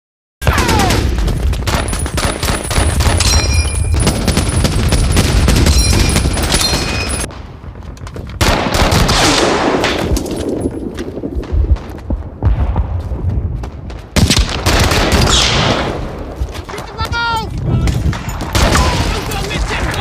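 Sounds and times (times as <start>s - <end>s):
rapid gunfire: 0.4s - 7.3s, 8.4s - 12.0s, 14.1s - 17.0s, 18.0s - 20.0s
machine-gun bursts: 1.7s - 7.3s.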